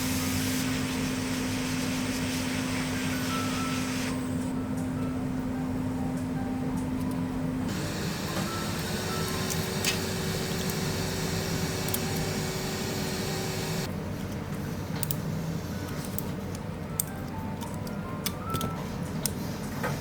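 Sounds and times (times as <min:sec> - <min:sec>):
faint background music: 0:15.1 - 0:20.0.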